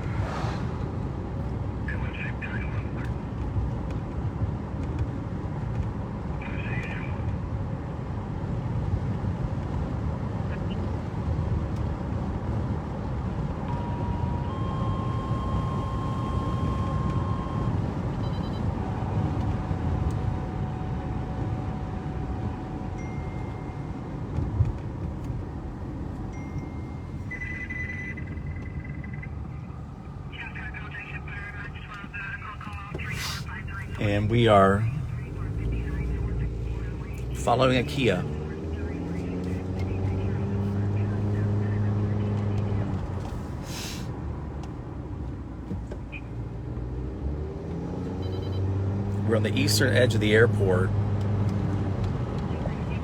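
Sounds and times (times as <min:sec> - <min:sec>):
car road noise rumble: 0:00.0 - 0:53.0
faint steady tones: 0:13.6 - 0:43.2.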